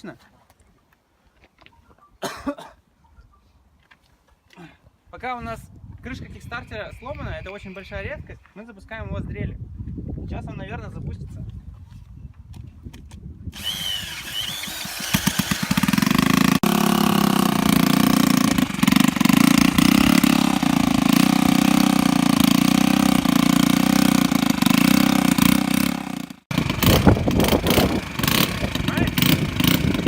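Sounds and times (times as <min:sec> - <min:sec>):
electric drill whine: 0:13.6 - 0:21.0
scooter engine running: 0:13.6 - 0:30.0.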